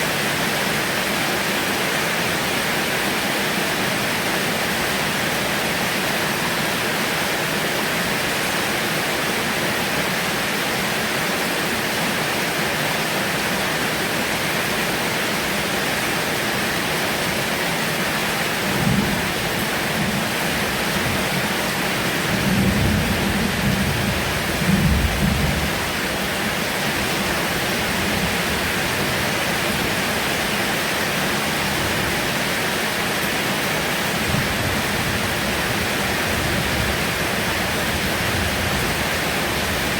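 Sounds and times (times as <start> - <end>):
heavy rain falling: 0.0 - 39.9
thunder rumbles: 22.3 - 25.9.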